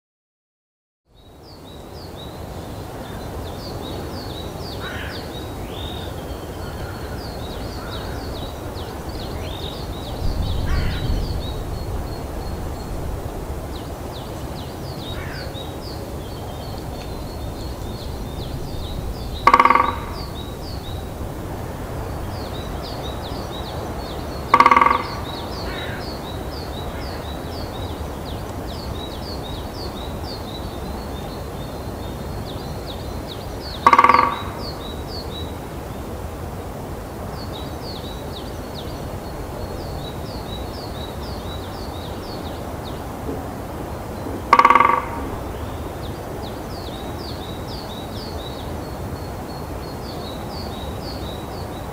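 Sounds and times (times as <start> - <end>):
small birds chirping: 1.1 - 21.2, 21.8 - 35.6, 44.0 - 51.9
woodpecker drumming on branch: 19.3 - 21.0, 24.4 - 26.0, 33.7 - 34.8, 44.4 - 45.5.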